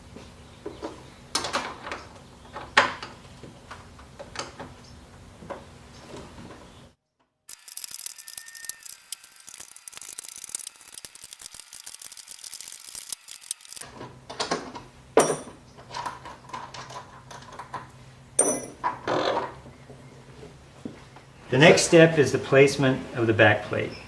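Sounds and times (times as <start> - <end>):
handling clatter: 15.2 - 15.7, 18.4 - 19.0
metal tools clicking and rattling: 15.2 - 15.7, 18.4 - 19.0.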